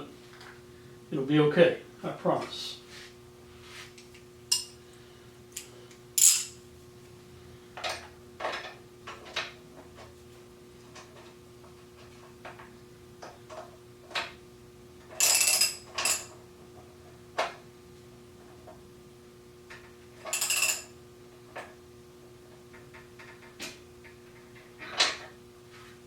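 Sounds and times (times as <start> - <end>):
faint steady hum: 0.0 - 26.0
hand tools clinking: 5.6 - 6.6.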